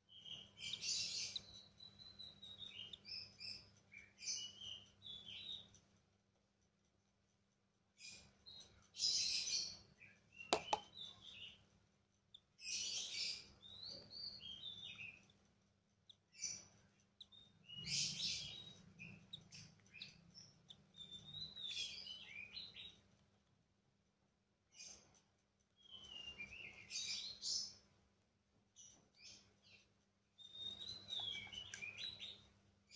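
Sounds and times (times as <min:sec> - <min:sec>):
sharp click: 0:10.6 - 0:10.9.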